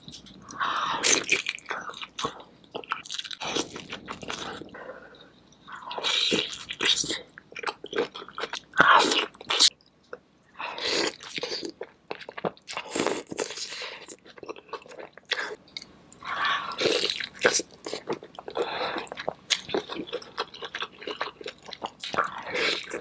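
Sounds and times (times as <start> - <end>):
crunching and wet chewing: 11.1 - 23.0.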